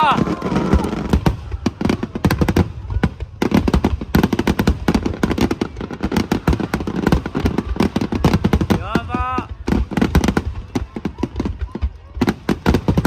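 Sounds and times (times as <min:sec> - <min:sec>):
fireworks bangs and crackles: 0:00.0 - 0:13.0.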